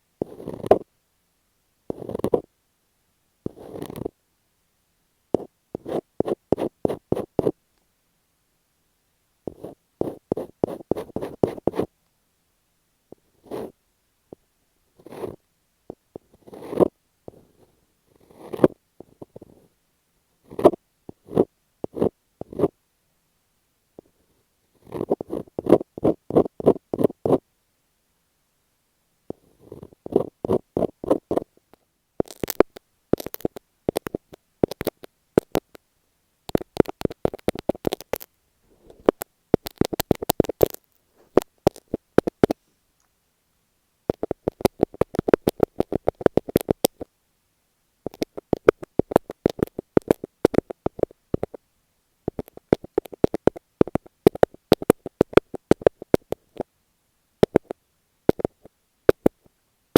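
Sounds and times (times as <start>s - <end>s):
fingertip tapping on tape: 32.2s - 35.8s, 36.5s - 38.3s, 39.0s - 40.8s, 44.1s - 47.1s, 48.1s - 51.6s, 52.3s - 56.4s, 57.4s - 59.4s.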